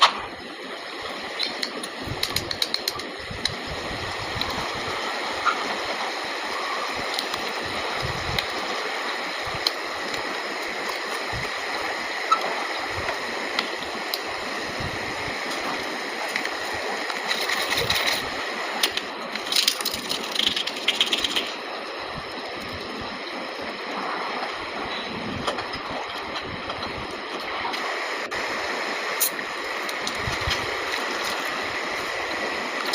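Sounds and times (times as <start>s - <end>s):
water running: 0.0s - 32.9s
clicks and rattles: 1.4s - 3.6s, 16.3s - 21.6s.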